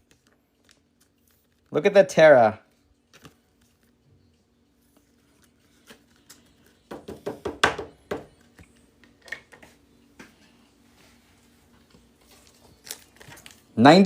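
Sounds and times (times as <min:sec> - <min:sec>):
foil and cards rustling: 0:00.0 - 0:07.0, 0:11.0 - 0:14.0.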